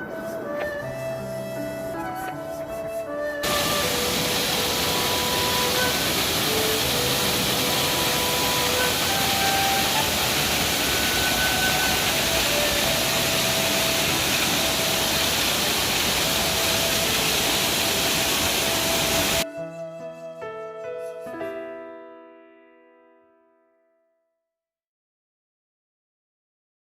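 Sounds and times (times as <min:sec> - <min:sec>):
faint music notes: 0:00.0 - 0:22.1
waterfall rushing: 0:03.4 - 0:19.4.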